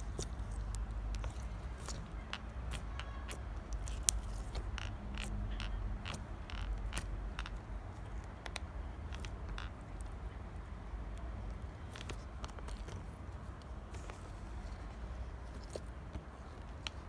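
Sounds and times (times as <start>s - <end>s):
slime clicking and popping: 0.0s - 7.7s.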